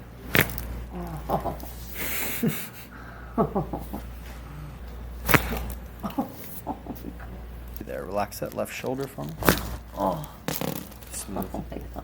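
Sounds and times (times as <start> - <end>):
person groaning: 0.9 - 1.6, 9.9 - 10.5
person breathing: 1.8 - 3.4, 4.3 - 4.8.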